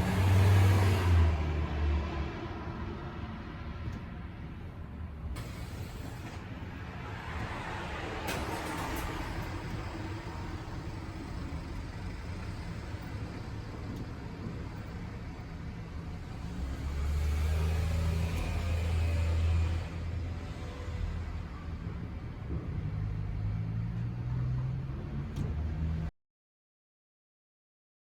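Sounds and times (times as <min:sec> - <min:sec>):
car engine idling: 0:08.5 - 0:16.4.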